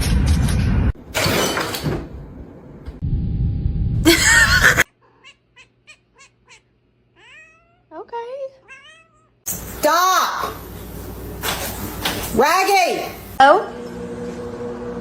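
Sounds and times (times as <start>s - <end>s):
cat yowling: 5.0s - 7.9s, 8.6s - 9.4s.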